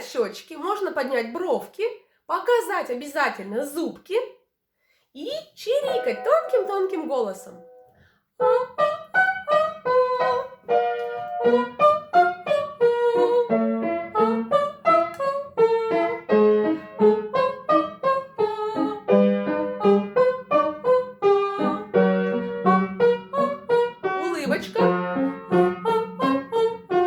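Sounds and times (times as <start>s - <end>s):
piano playing lively accompaniment: 5.9s - 6.9s, 8.8s - 27.0s.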